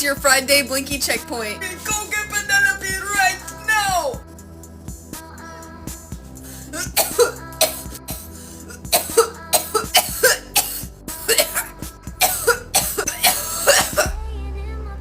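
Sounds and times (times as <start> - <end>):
background music with low bass: 0.0 - 15.0
person coughing harshly: 6.8 - 14.1.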